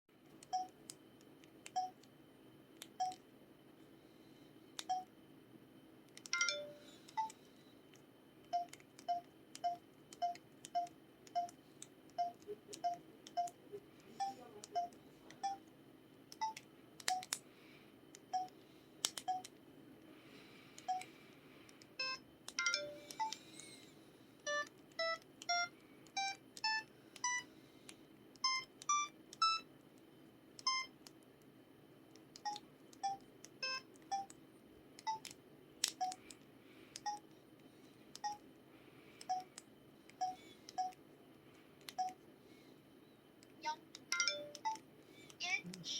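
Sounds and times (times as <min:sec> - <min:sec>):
phone keypad beeps: 0:00.5 - 0:00.8, 0:01.7 - 0:02.0, 0:03.0 - 0:03.2, 0:04.8 - 0:05.1, 0:06.3 - 0:07.4, 0:08.5 - 0:11.6, 0:12.2 - 0:13.6, 0:14.2 - 0:15.6, 0:16.4 - 0:17.3, 0:18.3 - 0:18.5, 0:19.2 - 0:19.5, 0:20.9 - 0:21.1, 0:24.5 - 0:27.5, 0:28.4 - 0:29.6, 0:30.6 - 0:30.9, 0:32.4 - 0:34.3, 0:35.0 - 0:35.3, 0:36.0 - 0:36.2, 0:37.0 - 0:37.2, 0:38.2 - 0:38.4, 0:39.3 - 0:39.5, 0:40.2 - 0:41.0, 0:41.9 - 0:42.2, 0:44.1 - 0:44.8.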